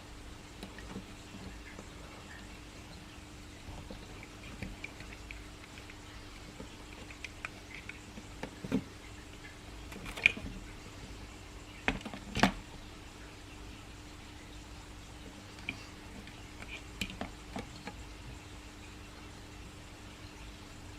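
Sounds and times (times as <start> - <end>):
faint steady hum: 0.0 - 20.9.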